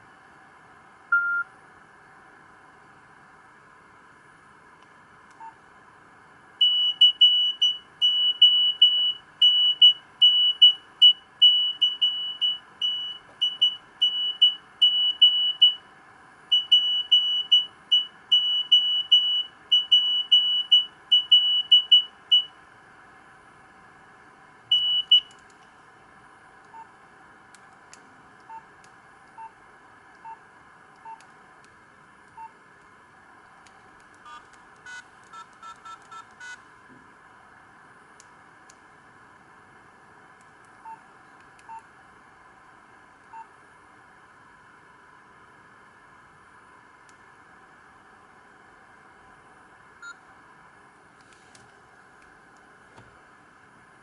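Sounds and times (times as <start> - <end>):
phone beeping ringtone: 1.1 - 1.4, 34.3 - 36.6
faint lower beeps: 1.1 - 1.5, 24.7 - 25.3.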